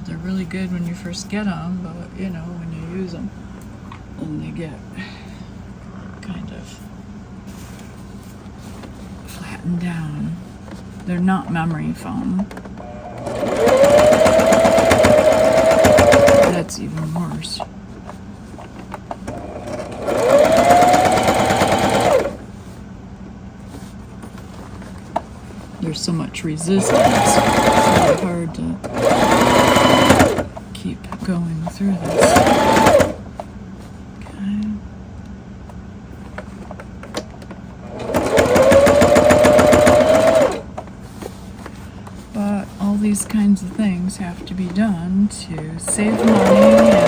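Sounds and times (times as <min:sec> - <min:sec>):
electric sewing machine stitching: 0:12.7 - 0:16.8, 0:19.2 - 0:22.4, 0:26.6 - 0:30.6, 0:32.0 - 0:33.3, 0:37.8 - 0:40.7, 0:45.8 - 0:47.0.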